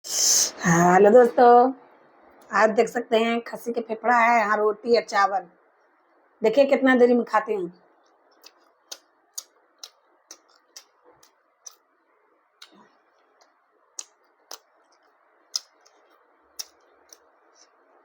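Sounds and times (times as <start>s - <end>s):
wet mouth clicks chewing: 8.3s - 11.8s, 12.6s - 17.8s.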